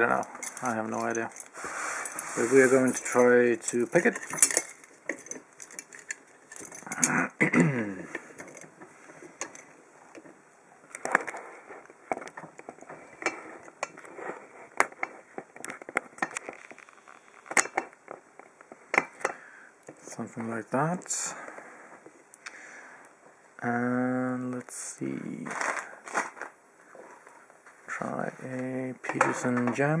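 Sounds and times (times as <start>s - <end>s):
metal clicks and knocks: 3.0s - 7.2s, 8.1s - 14.1s.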